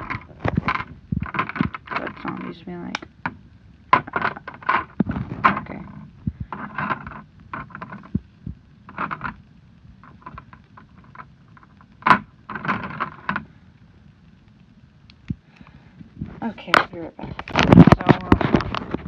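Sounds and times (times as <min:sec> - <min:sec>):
plastic bricks clicking: 0:00.0 - 0:08.2, 0:08.9 - 0:09.4, 0:10.0 - 0:13.5.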